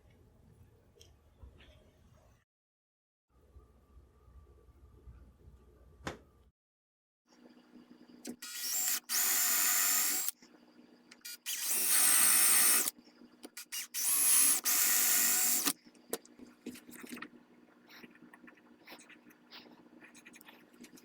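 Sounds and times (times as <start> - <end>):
power drill boring into wood: 8.3 - 10.4, 11.3 - 12.9, 13.6 - 15.8.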